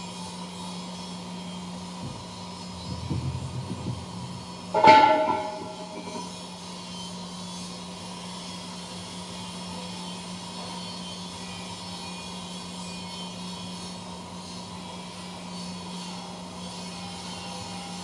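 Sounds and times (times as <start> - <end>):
machine hum and tone: 0.0 - 18.0
ringing metallic clang: 4.8 - 6.3.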